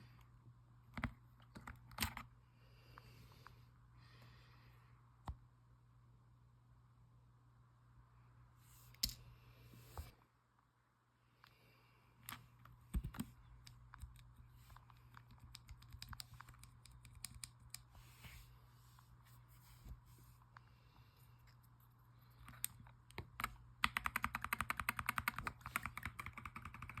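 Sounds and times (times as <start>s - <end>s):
mechanical keyboard keys clicking: 22.6s - 27.0s
fast typing: 23.8s - 27.0s.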